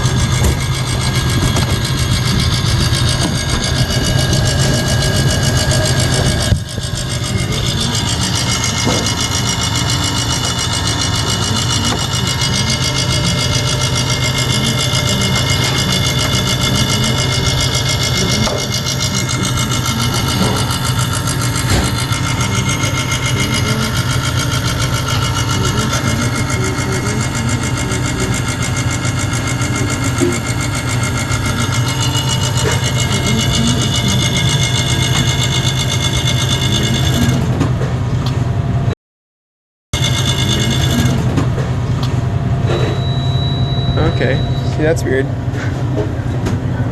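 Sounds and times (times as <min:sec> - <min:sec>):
compressor humming: 0:00.0 - 0:38.9, 0:40.0 - 0:46.9.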